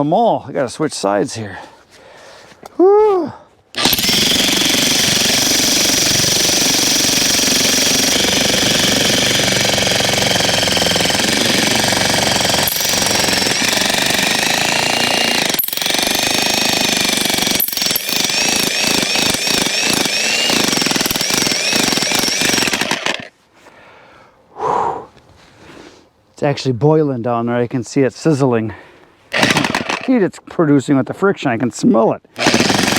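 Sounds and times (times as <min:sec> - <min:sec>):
jackhammer hammering into wood: 0:03.8 - 0:23.3, 0:29.3 - 0:30.2, 0:32.4 - 0:32.9.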